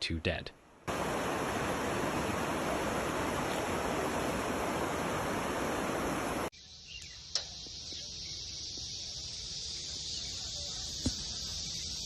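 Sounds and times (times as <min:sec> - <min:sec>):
floodwater rushing: 0:00.8 - 0:06.5
high hiss: 0:00.9 - 0:12.0.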